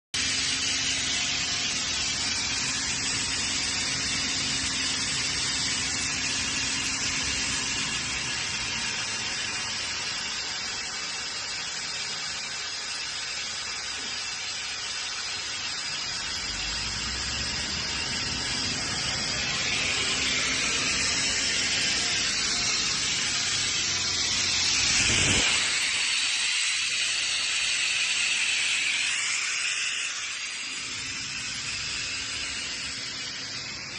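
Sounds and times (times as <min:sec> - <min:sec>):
air compressor hissing: 0:00.2 - 0:33.9.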